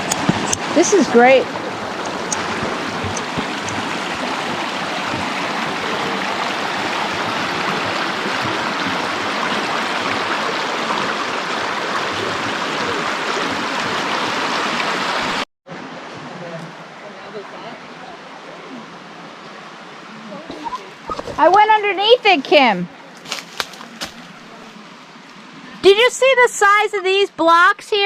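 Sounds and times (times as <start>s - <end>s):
stream rushing over rocks: 0.0s - 21.5s.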